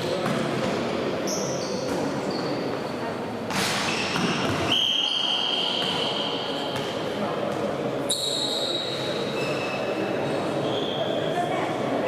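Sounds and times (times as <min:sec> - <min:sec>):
ball and shoe sounds echoing: 0:00.0 - 0:09.0.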